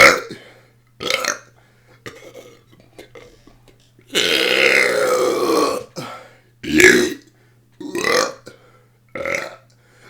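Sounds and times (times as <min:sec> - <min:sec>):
person burping: 0:00.0 - 0:00.4, 0:01.0 - 0:01.5, 0:04.1 - 0:08.5, 0:09.1 - 0:09.6
faint small noises: 0:00.0 - 0:10.0.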